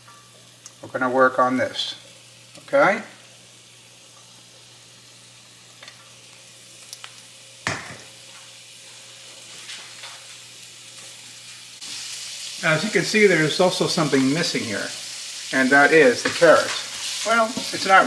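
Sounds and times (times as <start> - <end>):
vegetables sizzling in a pan: 0.0 - 18.0.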